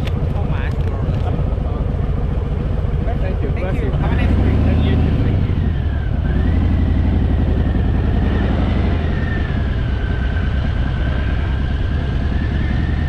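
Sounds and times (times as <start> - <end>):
motorcycle engine running: 0.0 - 13.0
thin wavering whine: 5.6 - 13.0.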